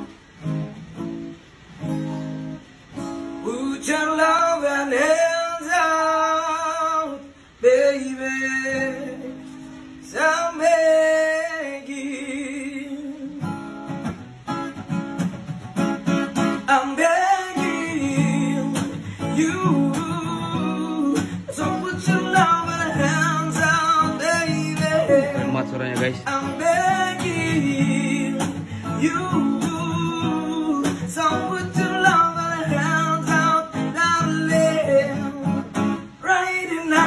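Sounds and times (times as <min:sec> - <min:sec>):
acoustic guitar: 0:00.0 - 0:37.0
person singing: 0:16.7 - 0:37.0.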